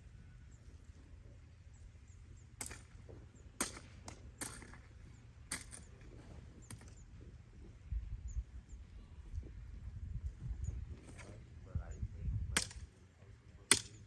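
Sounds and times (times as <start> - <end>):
hand tool chopping wood: 12.6 - 12.8, 13.7 - 14.0.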